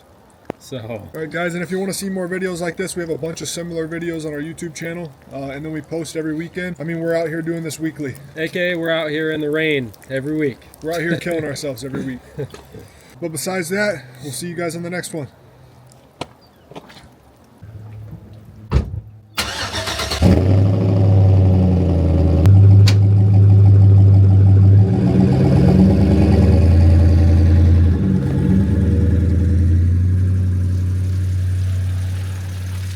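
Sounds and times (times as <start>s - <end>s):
truck engine starting and running: 18.6s - 32.9s
thump: 18.7s - 19.1s, 22.8s - 23.1s.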